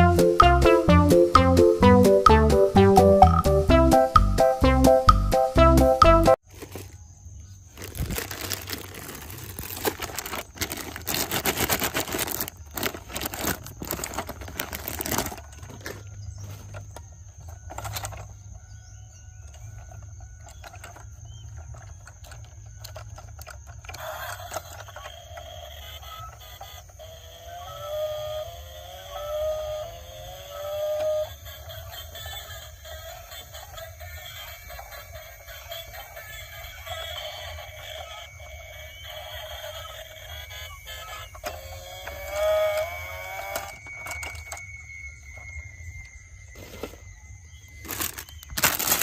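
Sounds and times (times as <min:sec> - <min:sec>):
tinkly electronic notes: 0:00.0 - 0:06.4
toy electronic tone rising in pitch: 0:00.0 - 0:06.4, 0:24.0 - 0:46.9
rustling handling noise: 0:06.4 - 0:07.0, 0:07.6 - 0:17.0, 0:47.8 - 0:49.0.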